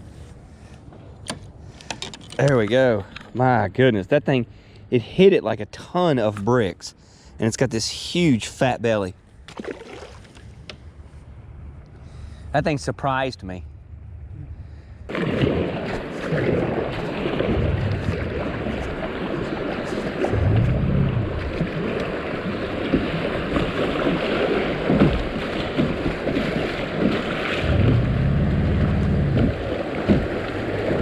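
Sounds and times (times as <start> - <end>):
wind buffeting microphone: 14.2 - 31.0
river water rushing: 15.1 - 31.0.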